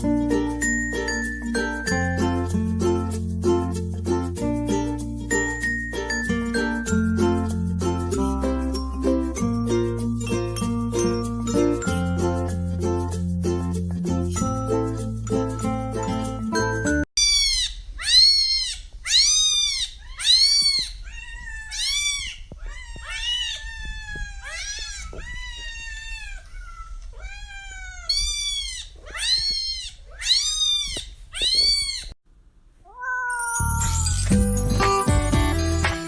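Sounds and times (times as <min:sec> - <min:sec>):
cat meowing: 0:17.2 - 0:32.2, 0:32.8 - 0:34.0.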